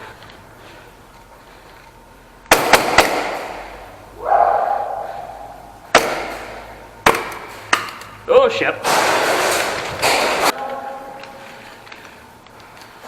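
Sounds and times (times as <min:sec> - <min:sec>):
airsoft gunshots echoing: 0:02.5 - 0:03.9, 0:04.8 - 0:07.8.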